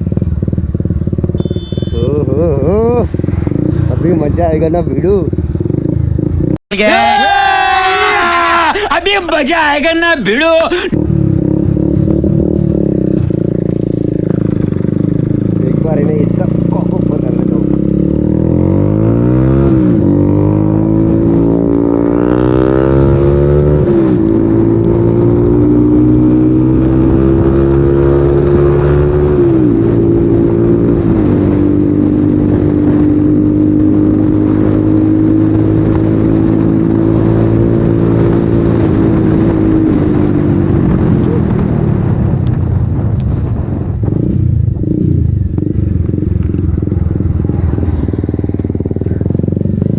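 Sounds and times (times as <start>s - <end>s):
motorcycle engine accelerating: 0.0s - 6.6s, 10.9s - 49.9s.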